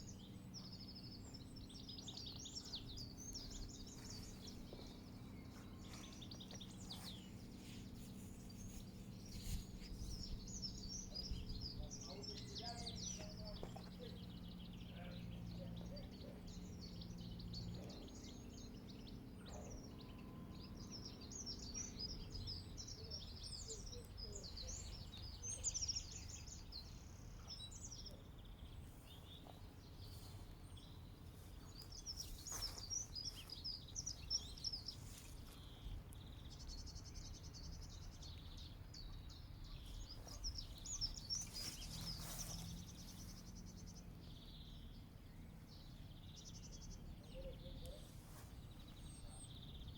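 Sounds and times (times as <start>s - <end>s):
low wind rumble: 0.0s - 19.4s
songbirds chirping and singing: 0.0s - 49.9s.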